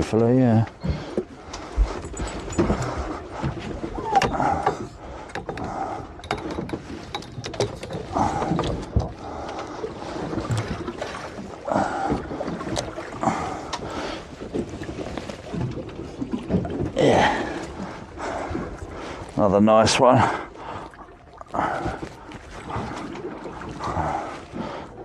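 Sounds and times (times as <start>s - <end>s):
knocks and clatter on boat: 0.0s - 25.0s
water splashing against boat hull: 0.0s - 25.0s.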